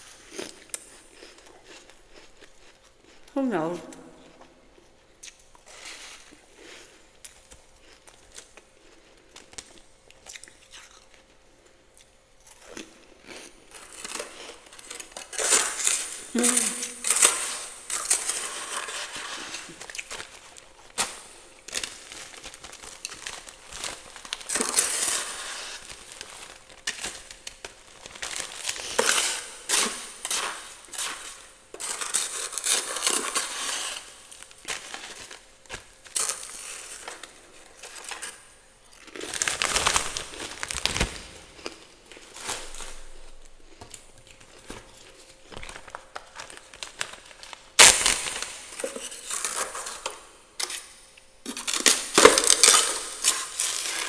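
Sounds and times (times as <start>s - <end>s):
spoon scraping freezer ice: 13.8s - 20.1s, 28.3s - 35.2s.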